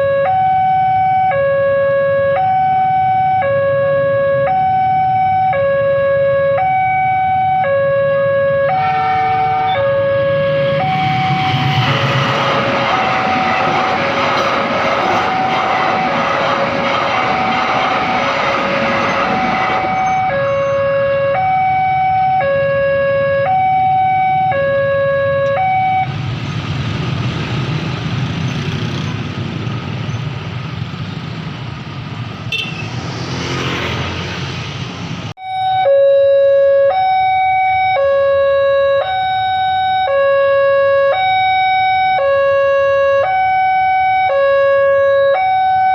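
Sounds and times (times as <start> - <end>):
two-tone level-crossing siren: 0.0 - 26.2, 35.4 - 45.9
train passing rumble: 8.7 - 20.9.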